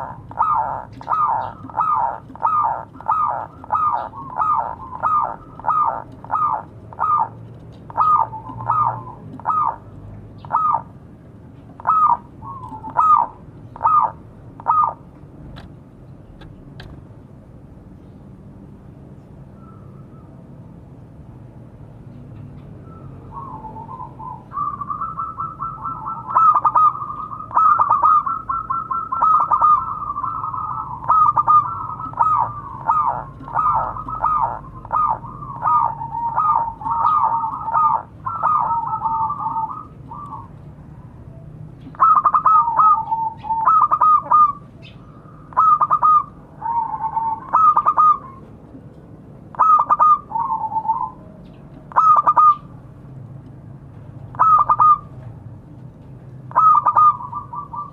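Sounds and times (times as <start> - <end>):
dove cooing: 0.0 - 10.9, 11.8 - 15.1, 22.9 - 48.5, 49.5 - 52.7, 54.3 - 55.2, 56.5 - 57.9.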